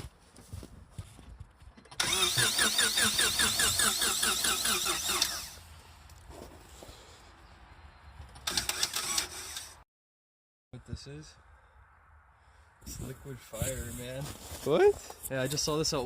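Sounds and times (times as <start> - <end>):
starter cranking engine: 1.9 - 5.6, 8.4 - 9.8.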